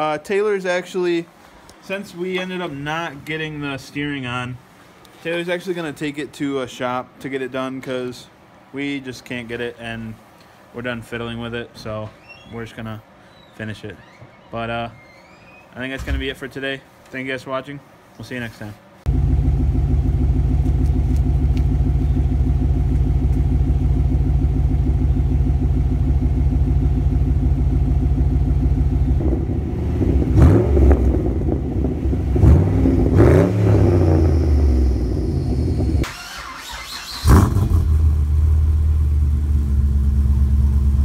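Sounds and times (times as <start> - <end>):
car engine idling and revving: 19.1 - 36.1, 37.2 - 41.0.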